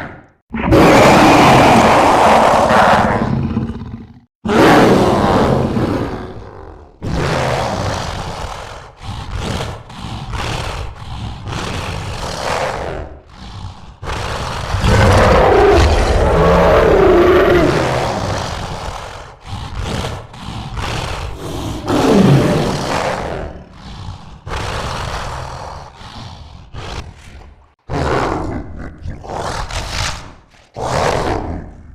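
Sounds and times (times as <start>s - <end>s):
monster growls and roars: 0.0s - 31.9s.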